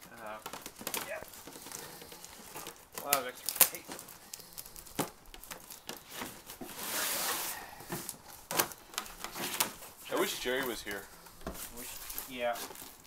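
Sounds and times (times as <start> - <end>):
packing tape tearing: 0.0 - 13.0
cardboard knocks and rustles: 10.5 - 13.0.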